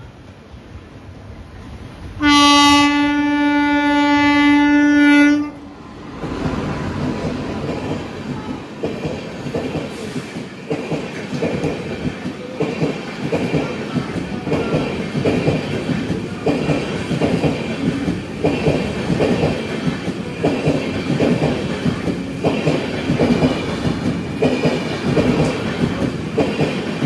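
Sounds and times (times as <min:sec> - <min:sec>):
train wheels rumbling on track: 0:00.0 - 0:27.0
train horn blast: 0:02.2 - 0:05.7.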